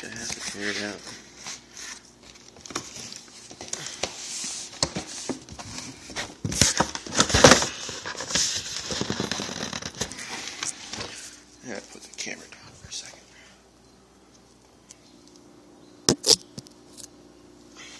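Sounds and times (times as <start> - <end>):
cardboard tearing and rustling: 1.6 - 11.0.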